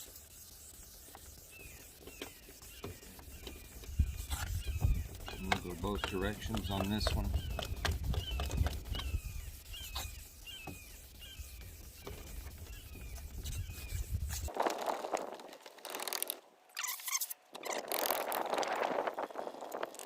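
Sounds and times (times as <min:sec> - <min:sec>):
sandpaper sanding plastic lens: 0:00.0 - 0:20.0
small squeak: 0:01.5 - 0:14.4, 0:16.8 - 0:18.0.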